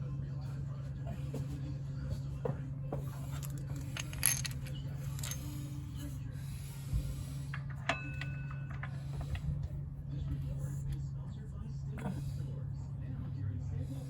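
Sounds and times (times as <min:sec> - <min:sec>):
metal tools clinking: 0:03.2 - 0:05.8.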